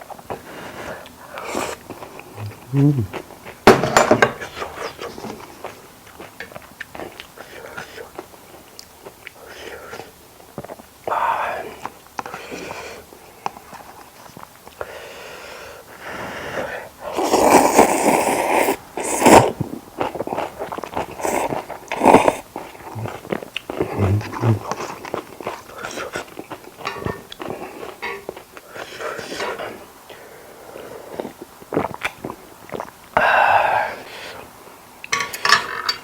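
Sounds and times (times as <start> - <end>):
person chewing: 0.1 - 3.6, 4.4 - 14.9, 17.1 - 33.2
breathy bursts: 0.6 - 3.2, 23.8 - 24.8.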